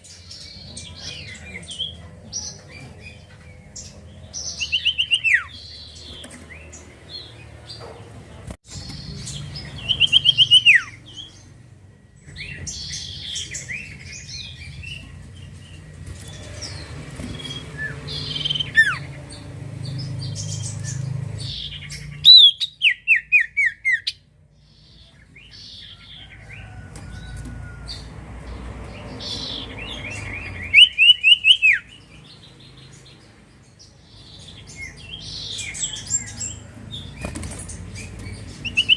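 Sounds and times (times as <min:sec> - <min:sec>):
bird whistled calls: 0:22.2 - 0:24.2, 0:30.7 - 0:31.9.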